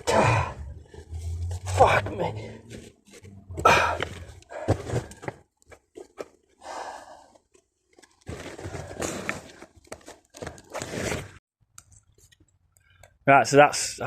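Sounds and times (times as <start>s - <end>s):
rustling and crunching rubble: 2.7s - 6.6s, 7.3s - 11.4s.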